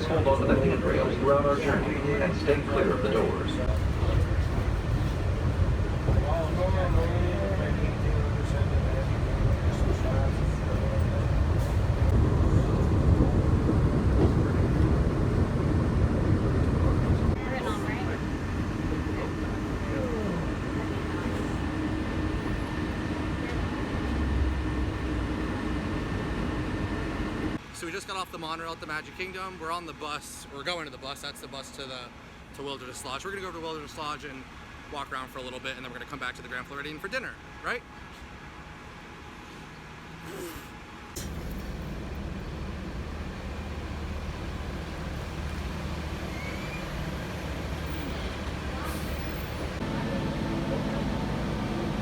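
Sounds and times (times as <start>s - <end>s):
constant hum: 0.0s - 27.6s, 37.3s - 52.0s
monorail rumble from inside: 0.0s - 27.6s, 41.1s - 52.0s
road noise: 0.0s - 52.0s.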